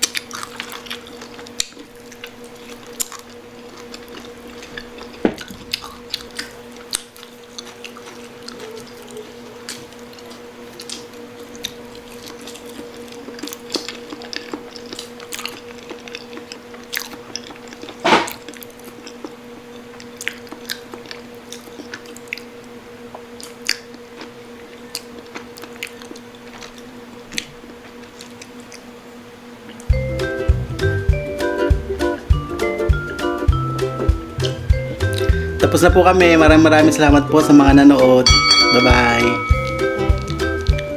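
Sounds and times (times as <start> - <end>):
chewing crispy meat: 0.0 - 29.0, 30.8 - 37.8
steady low hum: 21.2 - 40.9.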